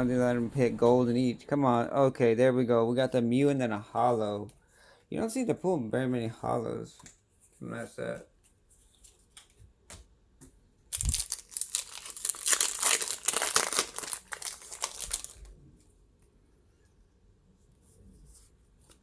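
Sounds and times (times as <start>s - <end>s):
foil wrapper tearing and crinkling: 10.9s - 15.5s.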